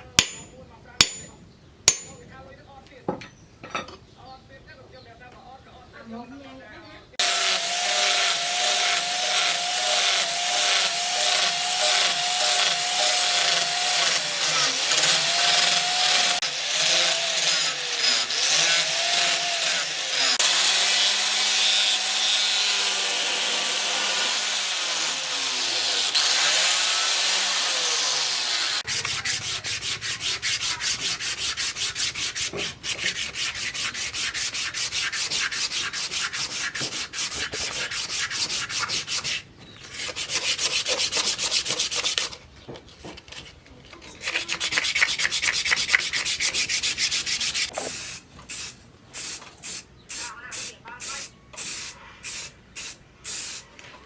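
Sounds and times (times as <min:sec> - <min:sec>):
power tool grinding steel: 0:07.2 - 0:42.3, 0:44.2 - 0:48.0.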